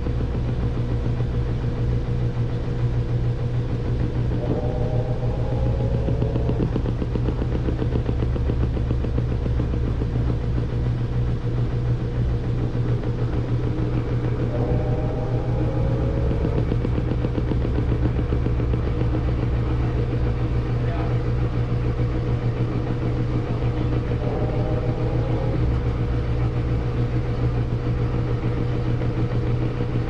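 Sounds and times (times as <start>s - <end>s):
washing machine spinning: 0.0s - 30.0s
whining tone gliding up: 4.0s - 8.2s, 13.4s - 18.9s, 23.6s - 26.7s.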